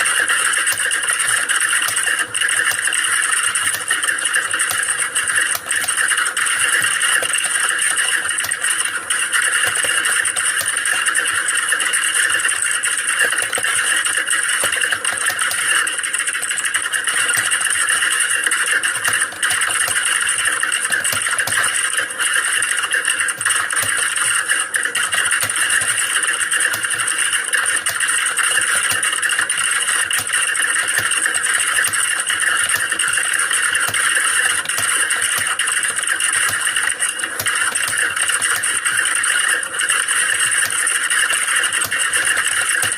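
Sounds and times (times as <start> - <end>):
many keyboards typing: 0.0 - 42.9.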